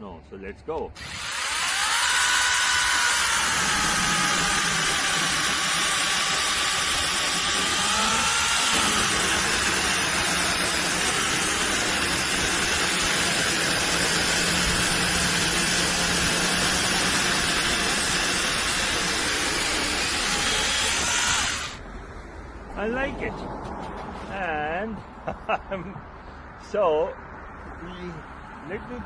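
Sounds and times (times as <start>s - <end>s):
mini chainsaw cutting a log: 1.0s - 21.8s.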